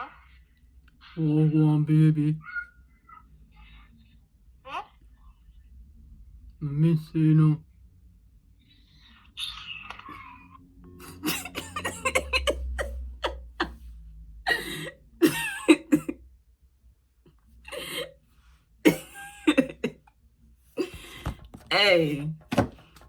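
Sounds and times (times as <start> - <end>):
person coughing: 11.0 - 13.8, 14.5 - 16.2, 18.9 - 20.0.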